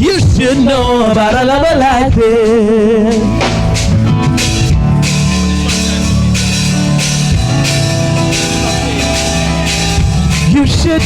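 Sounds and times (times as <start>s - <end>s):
person singing gospel: 0.0s - 11.0s
live band playing: 3.1s - 11.0s.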